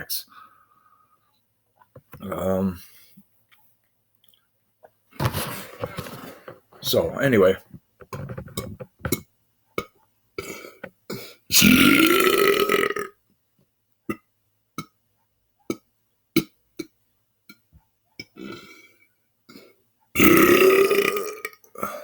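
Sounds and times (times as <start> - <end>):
man belching: 11.5 - 13.2, 20.2 - 22.0.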